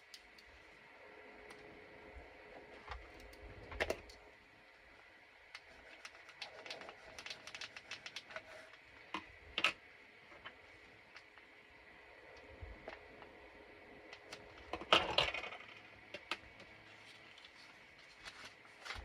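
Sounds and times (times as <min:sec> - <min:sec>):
paper supplies clicking and tapping: 0:05.6 - 0:09.8.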